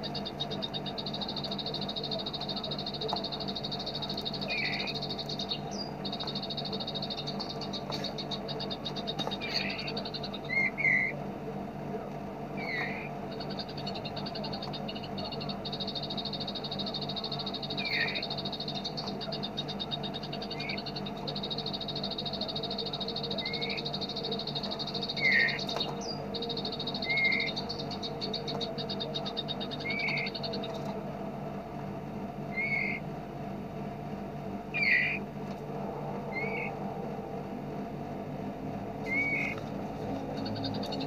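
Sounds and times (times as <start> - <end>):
sharp bird chirps: 0.0 - 11.1, 12.6 - 30.8, 34.8 - 35.2, 39.1 - 39.6
high bird trill: 0.0 - 11.2, 12.5 - 31.0, 32.4 - 33.1, 34.7 - 37.8, 38.9 - 41.0
low steady drone: 0.0 - 41.0.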